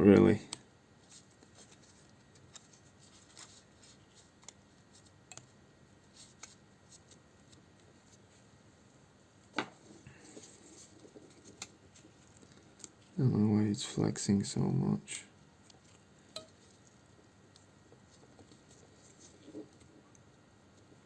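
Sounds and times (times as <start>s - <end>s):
small parts clicking and tapping: 0.5s - 5.6s.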